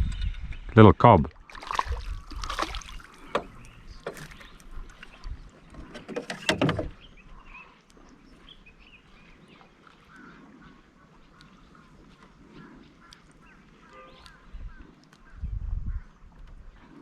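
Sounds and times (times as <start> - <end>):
water splashing: 1.3 - 7.0
knocks in a small boat: 2.4 - 4.6, 5.7 - 7.0
faint bird calls: 2.8 - 17.0.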